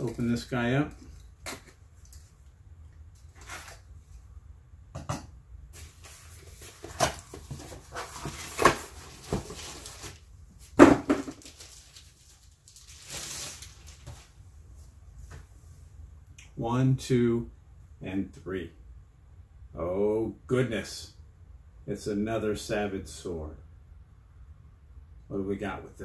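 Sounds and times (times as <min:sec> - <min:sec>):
packaging rustling and tearing: 0:05.8 - 0:10.2, 0:11.0 - 0:14.3.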